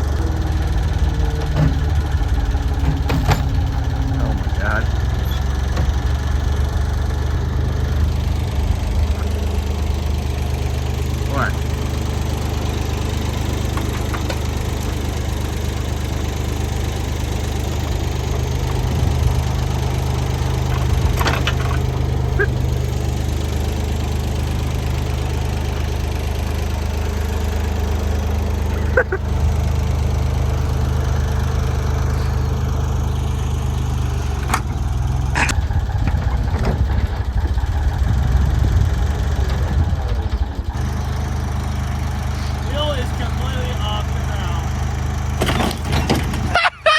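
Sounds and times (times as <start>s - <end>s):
heavy machine engine running: 0.0s - 46.9s
metallic clanks: 0.1s - 6.6s, 17.7s - 22.8s, 45.4s - 46.7s.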